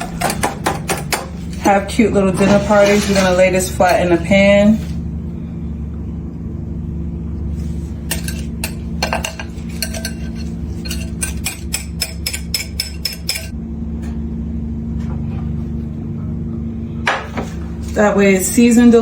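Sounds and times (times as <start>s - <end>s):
steady low hum: 0.0s - 19.0s
dishes and utensils clinking: 8.0s - 13.5s.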